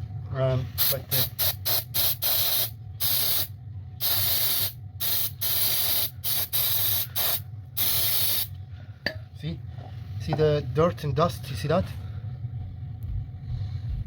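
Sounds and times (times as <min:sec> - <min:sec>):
steady low hum: 0:00.0 - 0:14.0
aerosol spray blasts: 0:00.8 - 0:08.5.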